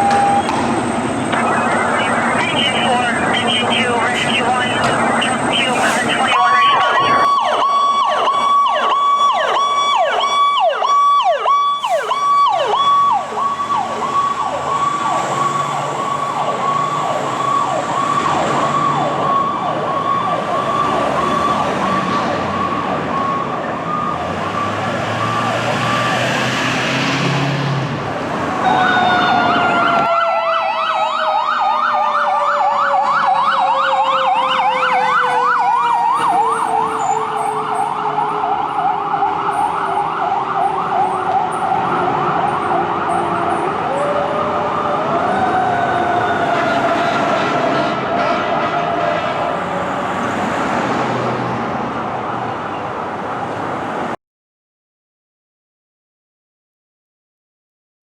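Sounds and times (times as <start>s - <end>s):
truck engine rumble: 0.0s - 9.2s
electronic yelp siren: 0.0s - 26.4s, 28.6s - 50.0s
second siren with faster sweeps: 1.3s - 26.3s, 28.6s - 49.2s.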